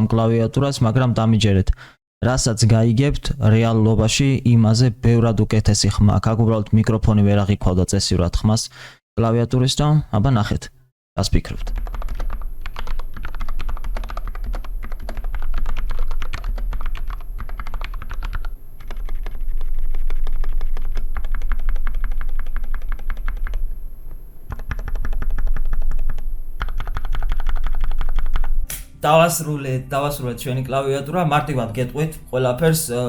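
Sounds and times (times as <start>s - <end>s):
steady low hum: 11.2s - 33.0s
typing on mechanical keyboard: 11.6s - 23.8s, 24.5s - 28.6s.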